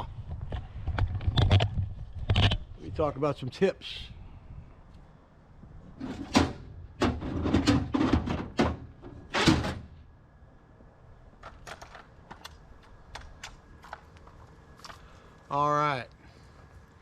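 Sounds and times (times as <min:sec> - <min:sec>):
gear clunking and knocking: 0:06.0 - 0:10.0.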